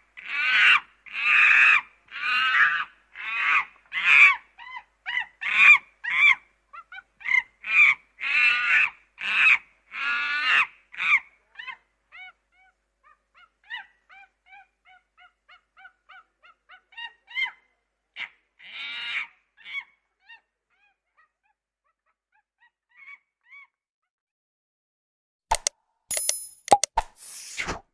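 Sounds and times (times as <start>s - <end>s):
monkey calls: 13.4s - 23.8s
sharp clicks: 25.5s - 27.2s.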